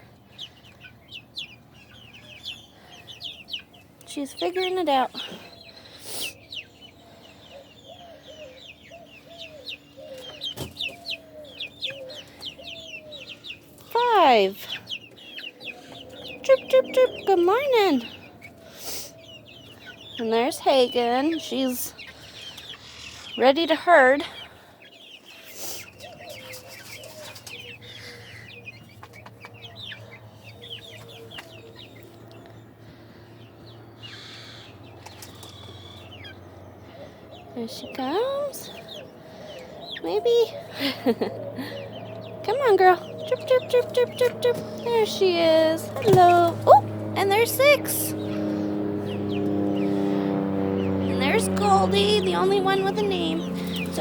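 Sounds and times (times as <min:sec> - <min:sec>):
hens clucking: 0:35.0 - 0:54.0.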